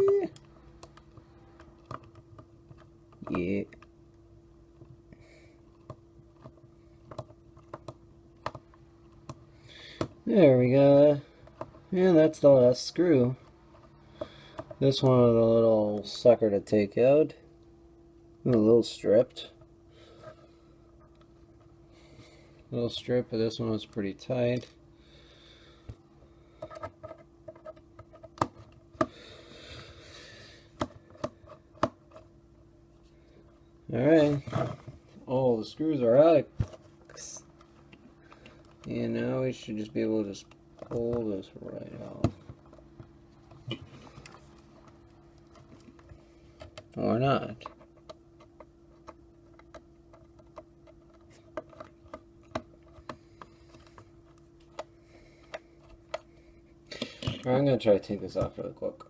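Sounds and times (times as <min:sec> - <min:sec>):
faint steady hum: 0:00.0 - 0:59.0
clicks and taps of handling plastic: 0:05.7 - 0:09.4, 0:26.6 - 0:29.1, 0:30.8 - 0:32.2, 0:40.4 - 0:41.4, 0:42.0 - 0:56.3.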